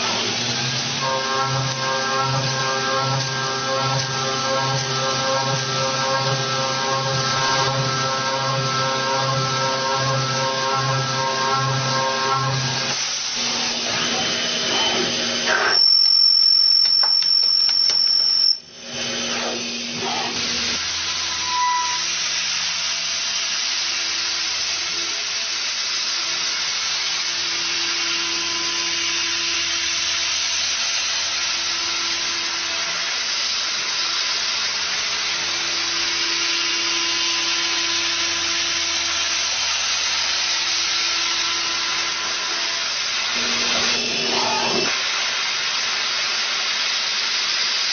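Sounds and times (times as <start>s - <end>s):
high-pitched whine: 1.0s - 18.7s, 40.8s - 45.0s
steady motor hum: 40.8s - 45.0s.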